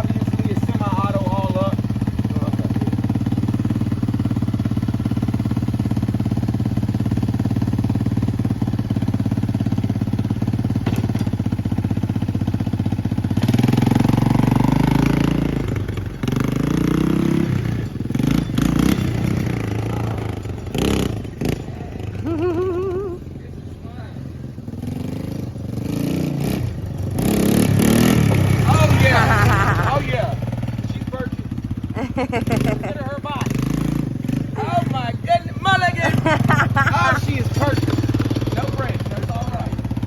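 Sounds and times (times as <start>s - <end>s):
engine idling and revving: 0.0s - 40.0s.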